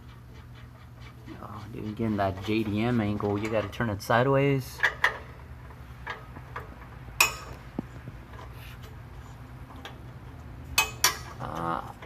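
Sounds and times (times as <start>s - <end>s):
low steady hum: 0.0s - 12.0s.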